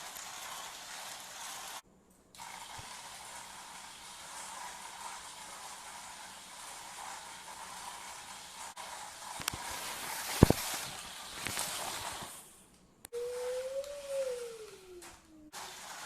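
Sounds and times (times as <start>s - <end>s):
toy car electric motor whine: 0.0s - 1.8s.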